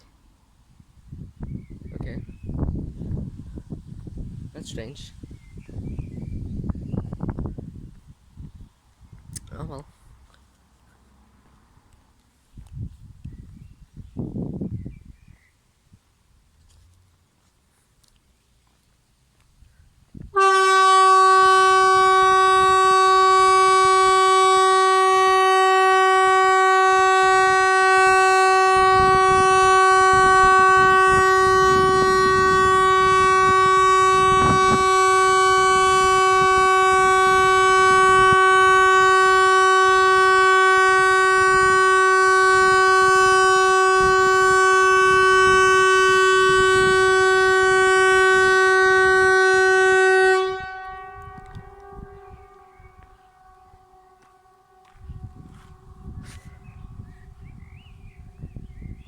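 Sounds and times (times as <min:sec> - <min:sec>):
compressed-air horn blast: 0:20.3 - 0:57.0.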